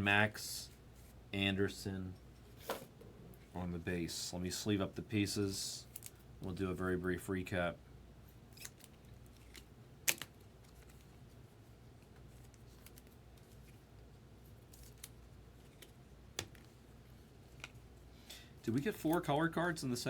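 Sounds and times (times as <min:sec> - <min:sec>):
plastic sleeves handling: 0:12.0 - 0:16.8.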